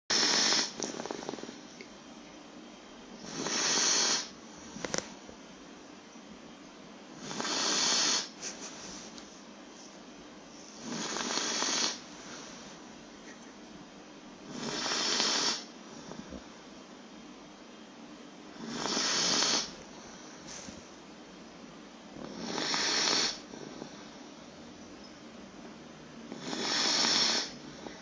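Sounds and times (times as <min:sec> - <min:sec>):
puppy snoring: 0:00.1 - 0:01.8, 0:03.2 - 0:05.1, 0:07.1 - 0:08.4, 0:10.6 - 0:12.6, 0:14.4 - 0:16.5, 0:18.5 - 0:19.8, 0:22.2 - 0:24.2, 0:26.3 - 0:28.0.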